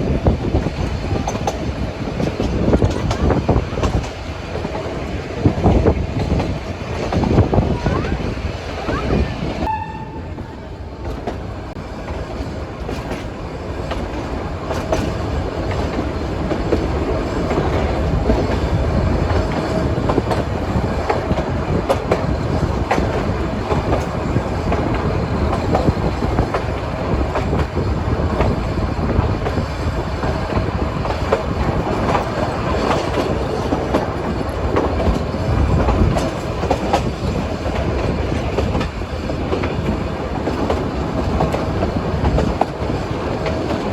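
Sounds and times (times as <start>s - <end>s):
train wheels clattering: 0.0s - 43.9s.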